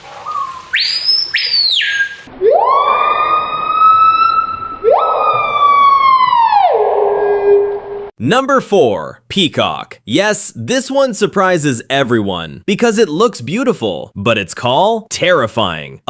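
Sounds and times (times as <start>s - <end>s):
bird whistled calls: 0.0s - 2.3s.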